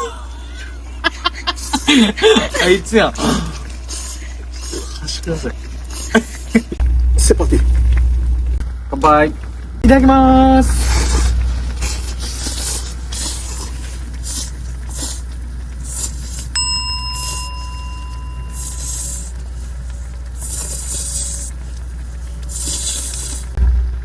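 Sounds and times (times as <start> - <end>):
people slurping noodles: 1.5 - 6.8, 10.6 - 16.6, 18.5 - 23.6
low rumble: 6.6 - 13.1, 23.4 - 24.0
bell-like ding: 16.6 - 19.0.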